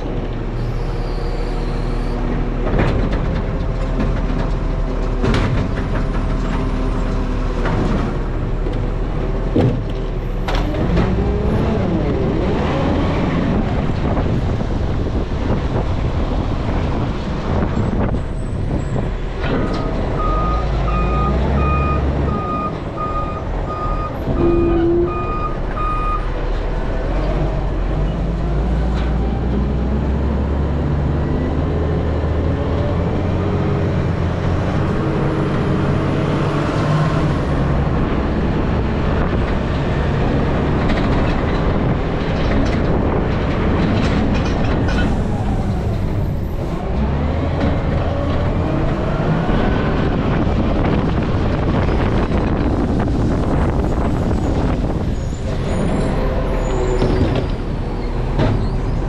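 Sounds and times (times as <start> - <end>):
diesel engine rumbling: 0.0 - 59.0
reversing alarm beeping: 19.7 - 26.3.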